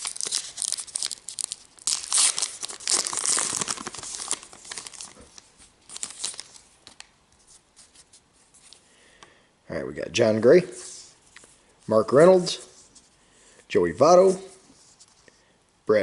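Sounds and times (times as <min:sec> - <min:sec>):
plastic wrapper tearing and crinkling: 0:00.0 - 0:07.1.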